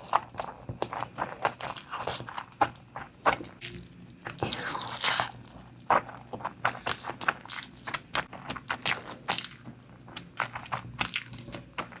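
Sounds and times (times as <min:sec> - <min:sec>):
wet chewing mouth sounds: 0:04.3 - 0:11.9.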